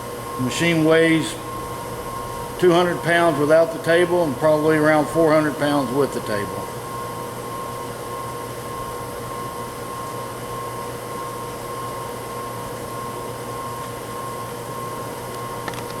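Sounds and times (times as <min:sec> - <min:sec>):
machinery hum with whine: 0:00.0 - 0:16.0.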